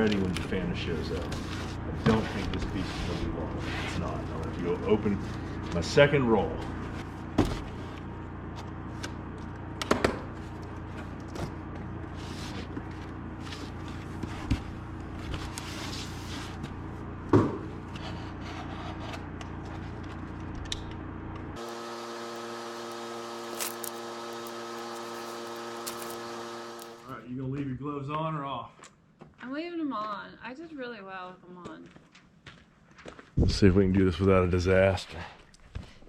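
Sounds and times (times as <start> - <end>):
steady multi-tone hum: 0.0 - 27.2
building materials being handled: 21.6 - 27.1.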